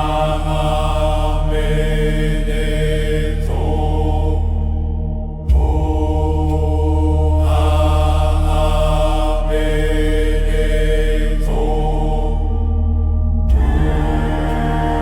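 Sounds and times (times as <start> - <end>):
deep steady drone: 0.0 - 15.0.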